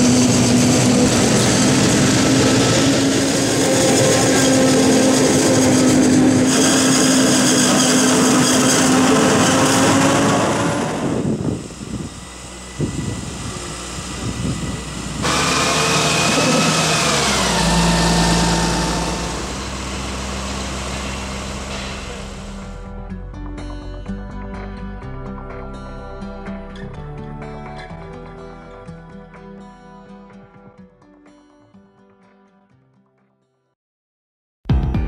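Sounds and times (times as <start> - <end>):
diesel engines droning: 0.0 - 22.9
high machine whine: 0.0 - 22.9
deep rumble: 9.9 - 23.0.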